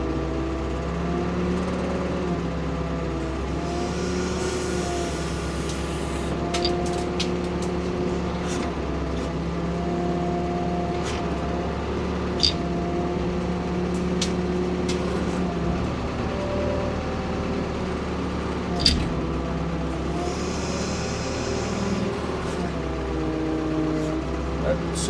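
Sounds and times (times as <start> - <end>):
excavator engine running: 0.0 - 25.0
sharp clicks and knocks: 6.4 - 8.7, 12.4 - 12.7, 18.7 - 19.2.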